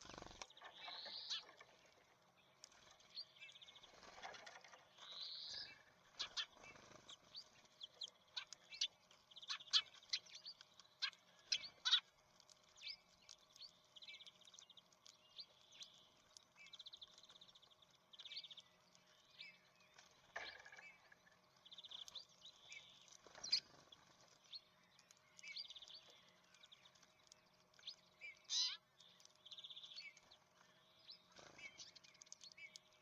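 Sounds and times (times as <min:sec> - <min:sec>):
songbirds chirping and trilling: 0:00.0 - 0:33.0.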